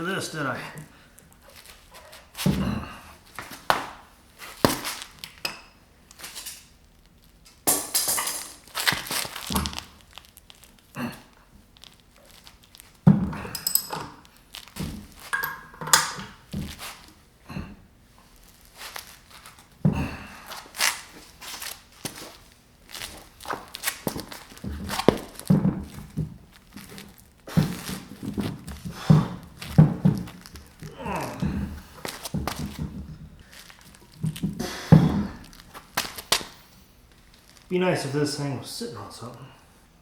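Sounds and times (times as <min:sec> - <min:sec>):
tools knocking and clinking: 0:07.7 - 0:08.6, 0:13.4 - 0:14.2, 0:15.3 - 0:16.3.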